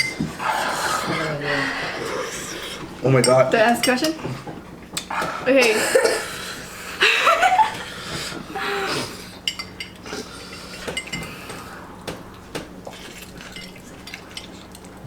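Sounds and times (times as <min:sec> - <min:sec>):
utensils clinking against dish: 0:00.0 - 0:01.4, 0:02.0 - 0:06.3, 0:09.3 - 0:14.9.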